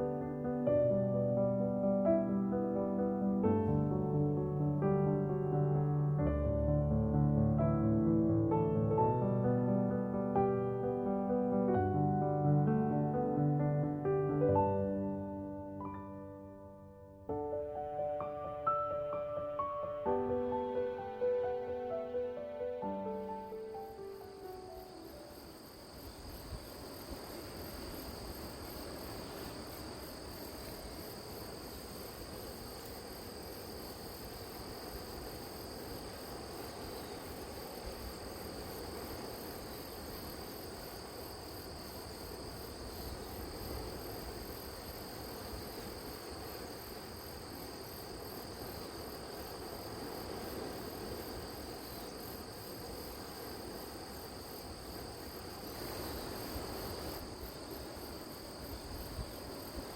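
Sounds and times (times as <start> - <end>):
crickets trilling: 17.3 - 59.9
low steady rush: 17.6 - 59.9
quickly pulsing insect chirp: 22.8 - 59.9.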